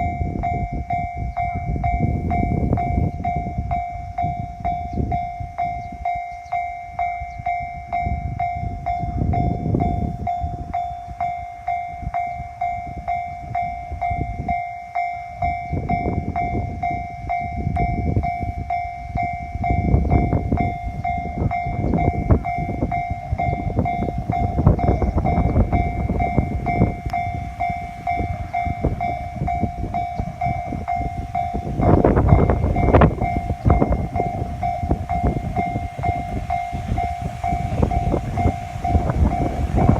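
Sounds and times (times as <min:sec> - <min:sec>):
crossing warning bell ringing: 0:00.0 - 0:39.9.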